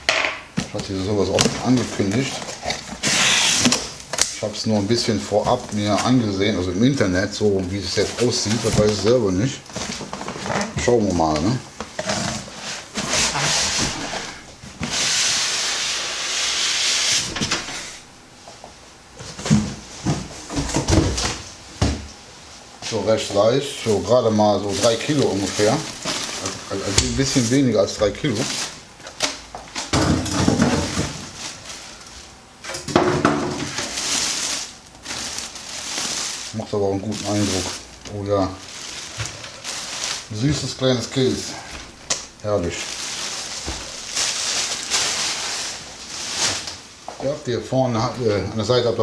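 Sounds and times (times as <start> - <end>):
packaging rustling: 0.7 - 15.6, 22.9 - 47.3
material sliding hiss: 2.9 - 9.6, 12.1 - 18.1, 22.4 - 29.4, 33.6 - 47.1.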